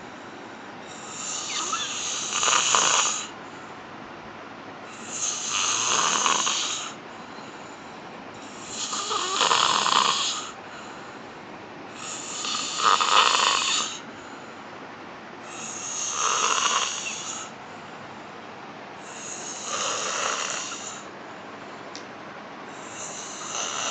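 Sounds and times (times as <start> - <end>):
quiet breathing: 0.0 - 4.0, 4.8 - 18.4, 19.0 - 21.9, 22.6 - 23.9
woman snoring: 0.9 - 3.4, 4.9 - 7.0, 8.5 - 10.6, 12.0 - 14.0, 15.5 - 17.6, 19.0 - 21.1, 22.8 - 23.9.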